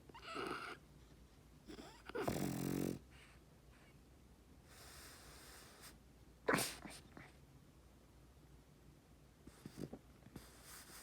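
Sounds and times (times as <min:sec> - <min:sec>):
dog snoring: 0:00.1 - 0:00.8, 0:01.7 - 0:03.3, 0:09.5 - 0:11.0
dog snuffling breaths: 0:09.4 - 0:11.0.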